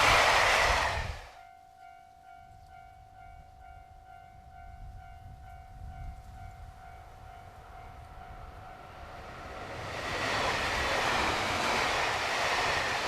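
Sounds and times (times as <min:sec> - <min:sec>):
approaching train: 0:00.0 - 0:13.0
level crossing warning bell: 0:01.4 - 0:09.4.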